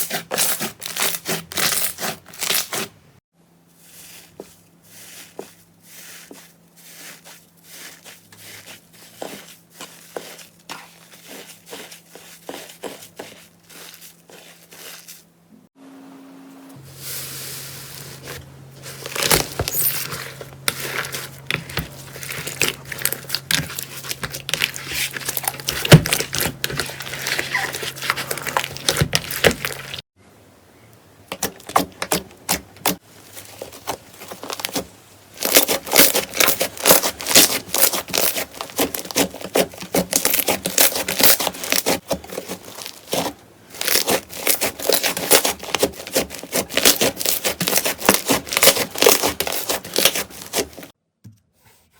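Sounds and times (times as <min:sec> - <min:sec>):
slime squeezed crackling: 0:18.9 - 0:30.0, 0:35.4 - 0:50.6.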